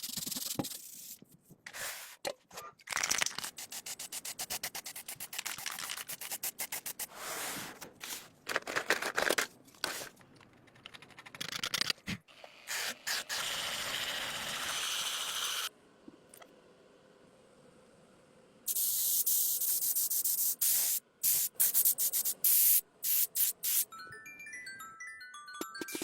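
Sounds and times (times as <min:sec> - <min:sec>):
paint spray hissing: 0:18.7 - 0:23.9.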